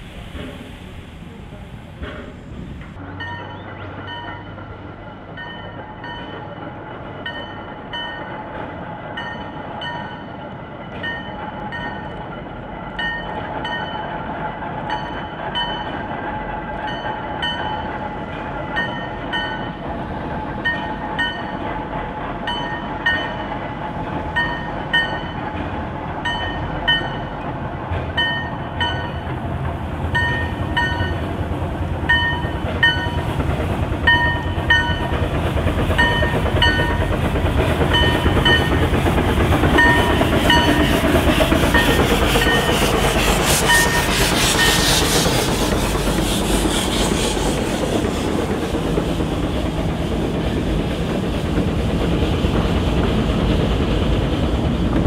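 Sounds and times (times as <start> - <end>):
rushing steam hiss: 0.0 - 3.0, 19.2 - 55.0
train wheels clicking over rail joints: 0.0 - 55.0.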